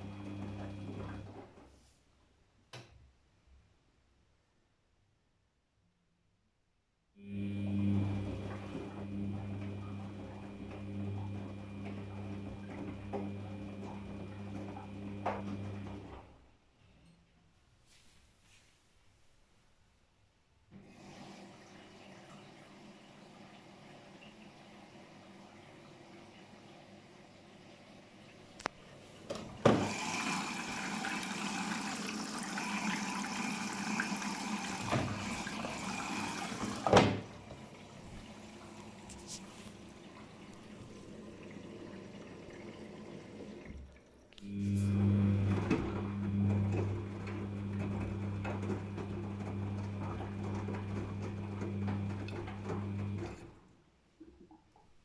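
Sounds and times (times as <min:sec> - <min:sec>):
washing machine humming: 0:00.0 - 0:01.7, 0:07.2 - 0:16.6, 0:20.7 - 0:53.8
water rushing into drum: 0:29.3 - 0:53.2.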